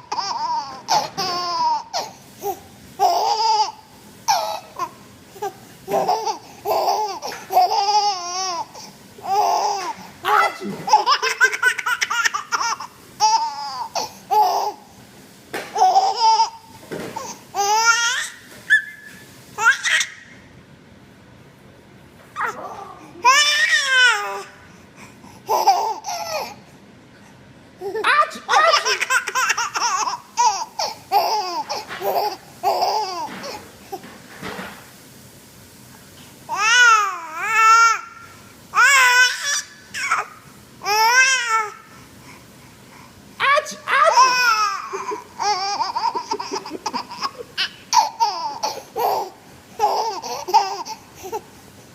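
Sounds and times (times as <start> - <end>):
baby giggling: 5.9 - 8.6, 9.2 - 14.8, 27.8 - 33.6, 43.7 - 51.4
baby squealing: 17.6 - 20.2, 43.6 - 50.9.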